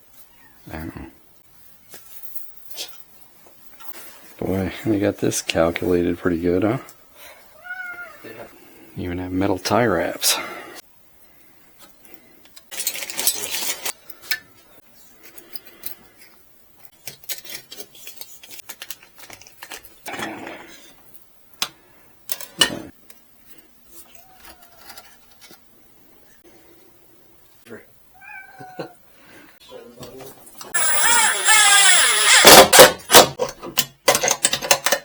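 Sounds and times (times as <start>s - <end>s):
small parts clicking and rattling: 15.2s - 19.9s, 30.7s - 35.0s.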